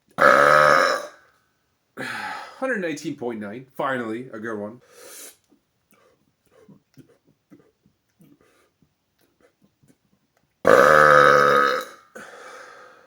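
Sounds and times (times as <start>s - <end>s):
man burping: 0.1s - 1.2s, 10.7s - 12.4s
soft breathy sound: 2.0s - 2.6s, 12.2s - 13.0s.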